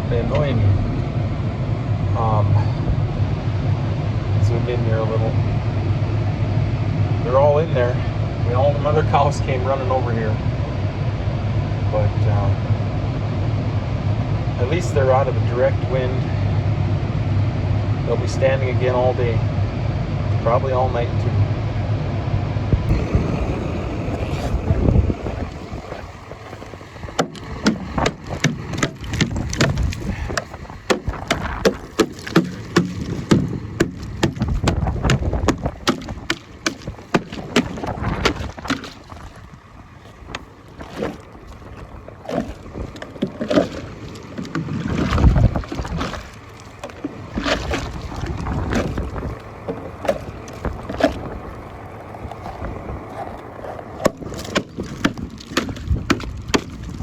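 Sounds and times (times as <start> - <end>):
wind buffeting microphone: 22.7 - 57.0
sharp clicks and knocks: 26.6 - 39.0.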